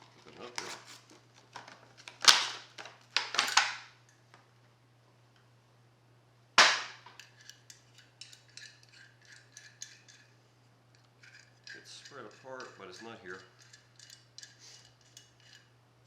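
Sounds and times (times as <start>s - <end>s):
metal tool scraping: 7.2s - 10.4s, 11.1s - 15.7s.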